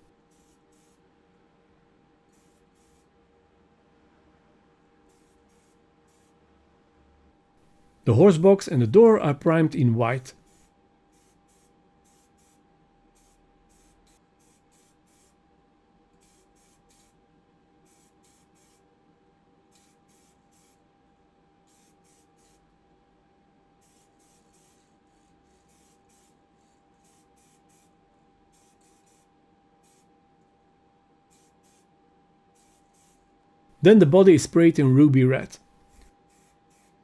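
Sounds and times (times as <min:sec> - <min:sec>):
faint steady hum: 0:00.0 - 0:11.1
spray can hissing: 0:02.3 - 0:03.0, 0:10.5 - 0:12.6, 0:13.2 - 0:15.3, 0:17.9 - 0:18.8, 0:19.7 - 0:20.8, 0:31.3 - 0:31.8, 0:32.6 - 0:33.2.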